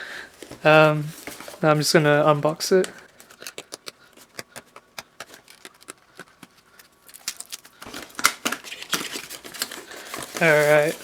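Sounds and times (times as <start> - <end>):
packaging rustling: 0.3 - 11.0
packaging clicks: 2.8 - 11.0.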